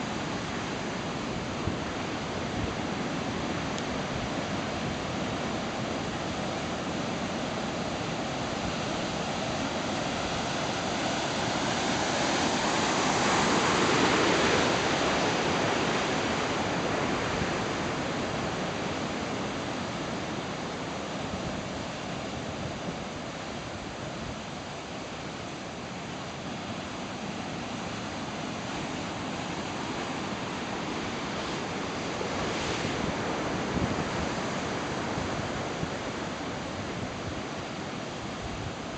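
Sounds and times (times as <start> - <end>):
ocean wave breaking: 3.2 - 22.5.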